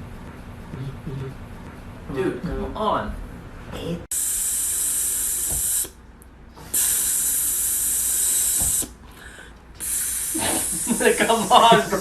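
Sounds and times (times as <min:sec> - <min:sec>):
long steady hisses: 0:04.1 - 0:06.0, 0:06.6 - 0:09.0, 0:09.8 - 0:12.0.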